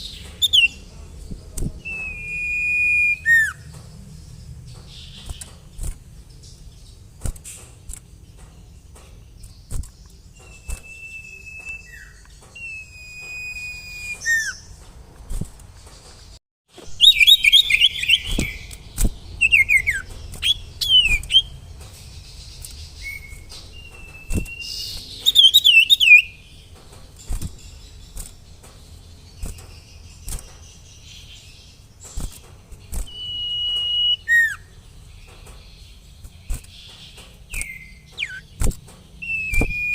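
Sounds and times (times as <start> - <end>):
bird singing whistled notes: 0.0 - 0.8, 1.6 - 3.8, 9.4 - 14.8, 16.8 - 21.6, 22.2 - 26.6, 29.2 - 39.9.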